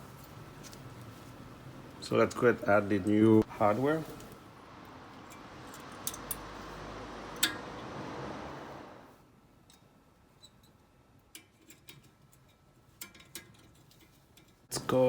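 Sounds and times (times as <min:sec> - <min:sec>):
steady hiss: 0:00.0 - 0:09.4
metal clips clicking into bracket: 0:05.3 - 0:06.5.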